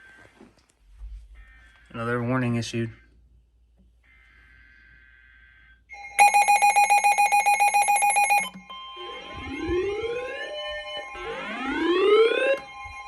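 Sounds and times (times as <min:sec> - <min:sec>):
rapid beeping: 0:06.2 - 0:08.5.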